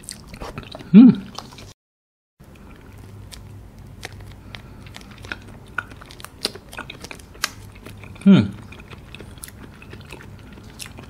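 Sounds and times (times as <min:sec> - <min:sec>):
wet chewing clicks: 0:02.6 - 0:11.0.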